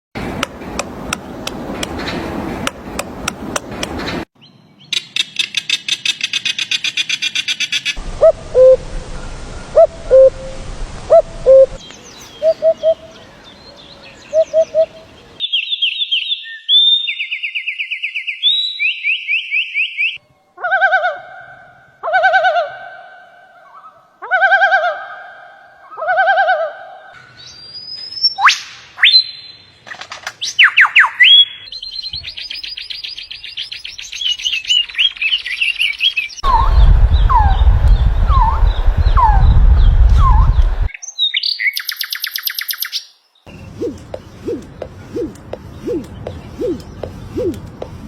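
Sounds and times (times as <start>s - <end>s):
quick bird clicks: 5.0s - 8.0s, 43.8s - 47.8s
repeated bird call: 40.2s - 48.0s.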